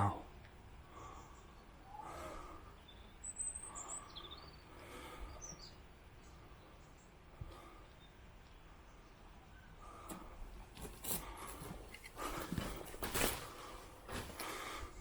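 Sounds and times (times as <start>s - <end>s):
faint bird chirps: 1.0s - 10.1s.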